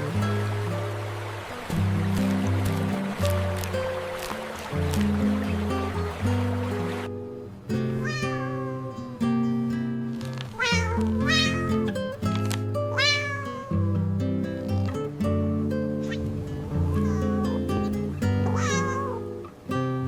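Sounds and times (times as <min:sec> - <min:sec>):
gentle background music: 0:00.0 - 0:20.0
cat meowing: 0:08.0 - 0:09.1, 0:10.5 - 0:11.9, 0:12.9 - 0:13.9, 0:16.8 - 0:17.7, 0:18.4 - 0:19.3.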